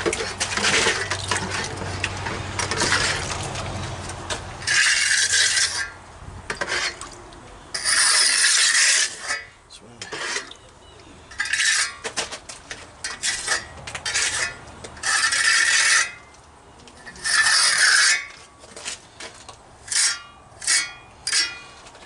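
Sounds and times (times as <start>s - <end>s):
trowel scraping cement: 0.0s - 7.1s, 7.7s - 10.6s, 11.2s - 16.4s, 17.0s - 21.8s.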